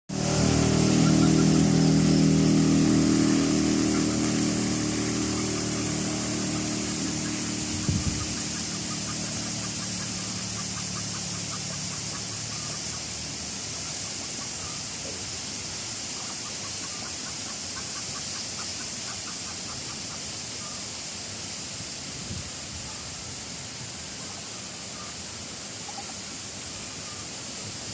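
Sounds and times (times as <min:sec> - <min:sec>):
low engine hum: 0:00.1 - 0:15.6
high-pitched hiss: 0:00.1 - 0:27.9
fowl clucking: 0:00.9 - 0:02.0, 0:03.6 - 0:13.1.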